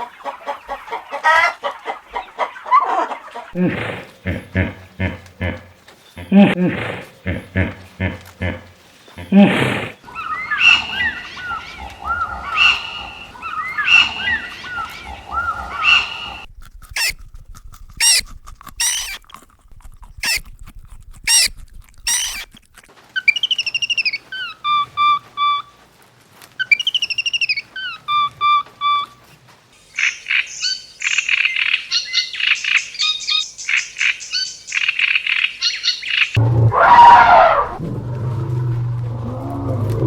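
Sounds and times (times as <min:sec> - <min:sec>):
birds chirping and whistling: 0:09.0 - 0:17.2, 0:18.0 - 0:18.2, 0:18.8 - 0:19.2, 0:21.3 - 0:21.5, 0:22.1 - 0:22.5, 0:23.2 - 0:25.7, 0:26.6 - 0:29.2, 0:29.8 - 0:37.8
sharp looping bird calls: 0:09.2 - 0:17.2, 0:18.0 - 0:18.2, 0:18.8 - 0:19.2, 0:20.2 - 0:20.4, 0:21.3 - 0:21.5, 0:22.1 - 0:22.5, 0:26.6 - 0:29.1, 0:29.9 - 0:36.4
descending whistled bird phrase: 0:10.0 - 0:17.2, 0:22.1 - 0:22.4.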